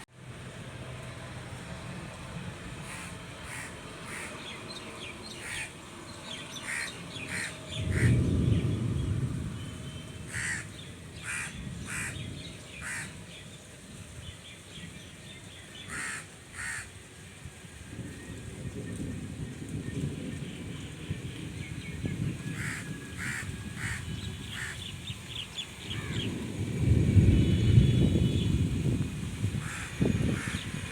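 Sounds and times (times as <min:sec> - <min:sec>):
crows cawing: 0:02.8 - 0:04.6, 0:05.3 - 0:05.8, 0:06.6 - 0:08.2, 0:10.3 - 0:13.2, 0:15.9 - 0:17.0, 0:22.5 - 0:24.9, 0:25.9 - 0:26.3, 0:29.6 - 0:30.7.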